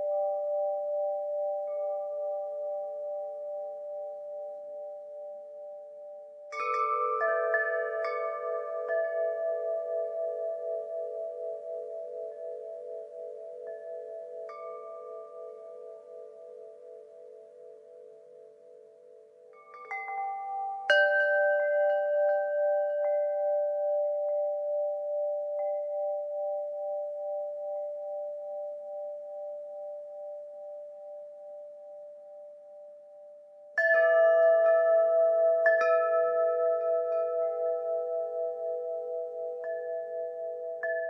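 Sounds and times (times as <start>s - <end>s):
wind chimes ringing: 6.6s - 18.2s, 19.5s - 29.2s.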